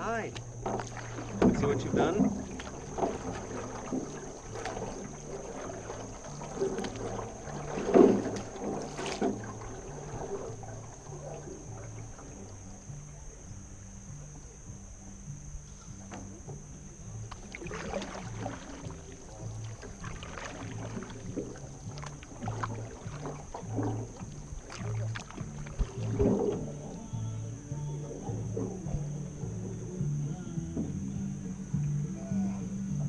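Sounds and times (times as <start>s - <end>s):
paddle strokes splashing water: 0.1s - 14.6s, 15.4s - 30.2s
music with low bass line: 9.3s - 33.0s.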